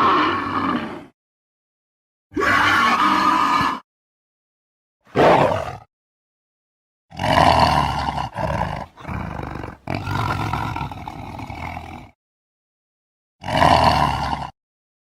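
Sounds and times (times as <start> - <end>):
cartoon ape roaring: 0.0 - 1.2, 2.3 - 3.8, 5.1 - 5.9, 7.1 - 12.2, 13.4 - 14.6.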